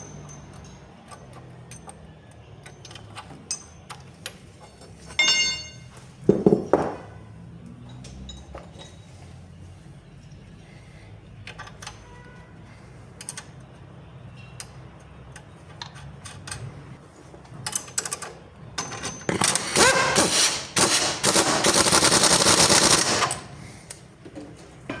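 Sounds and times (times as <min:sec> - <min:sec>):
pneumatic impact wrench hammering: 0:18.8 - 0:23.7.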